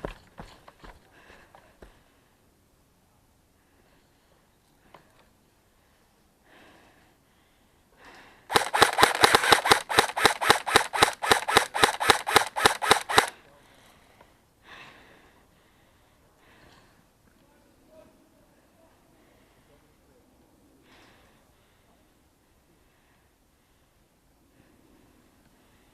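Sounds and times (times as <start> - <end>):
airsoft gun firing single shots: 8.5 - 13.3.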